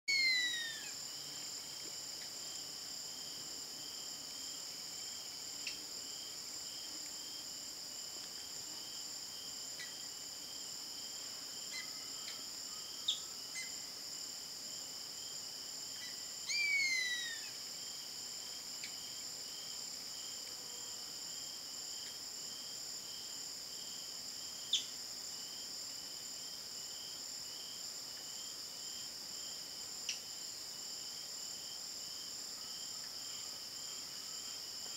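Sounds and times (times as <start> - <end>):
insects trilling: 0.1 - 34.9.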